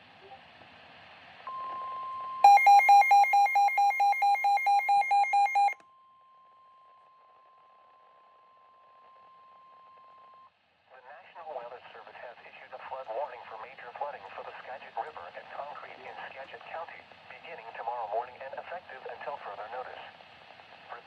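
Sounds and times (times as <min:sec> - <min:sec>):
beeping electronic alarm: 0:02.4 - 0:05.8
steady alert tone: 0:02.4 - 0:05.8.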